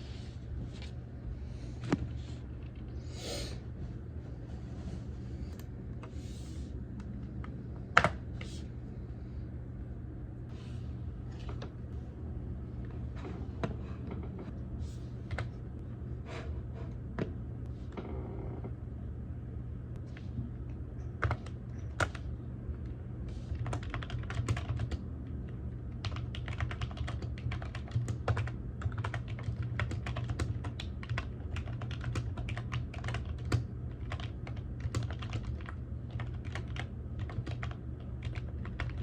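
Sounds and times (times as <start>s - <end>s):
steady low hum: 0.0s - 39.0s
typing on keyboard: 21.2s - 22.2s, 23.6s - 25.0s, 25.9s - 39.0s.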